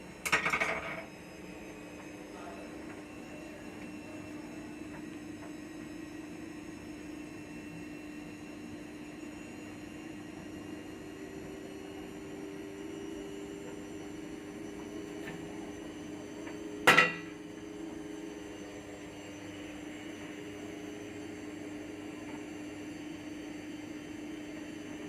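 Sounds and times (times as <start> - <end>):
steady hum: 7.9 - 25.0.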